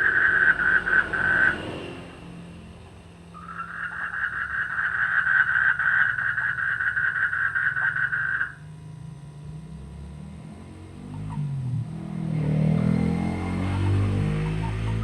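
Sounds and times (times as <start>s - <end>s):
frog trilling call: 0.0s - 1.9s, 3.3s - 8.7s
low steady hum: 0.0s - 15.0s.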